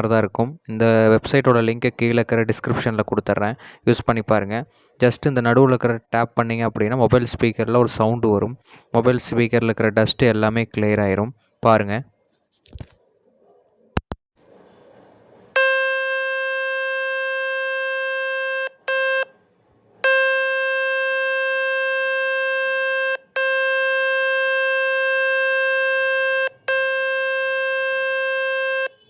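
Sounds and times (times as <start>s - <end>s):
buzzy phone speaker tone: 20.0s - 29.0s.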